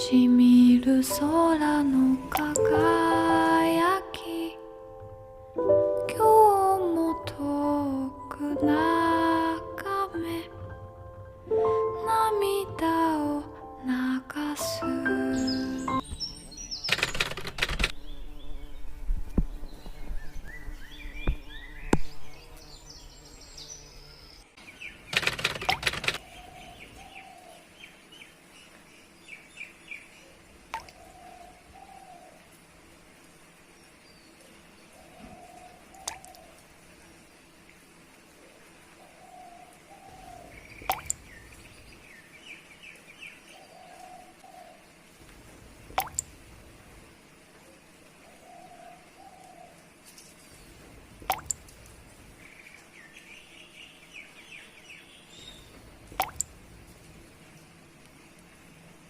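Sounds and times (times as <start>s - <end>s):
faint steady hiss: 0.0s - 59.0s
small birds chirping: 14.0s - 59.0s
lower falling bird calls: 15.0s - 58.3s
sharp clicks: 16.8s - 18.0s, 25.1s - 26.2s
rustling burst: 25.1s - 26.2s.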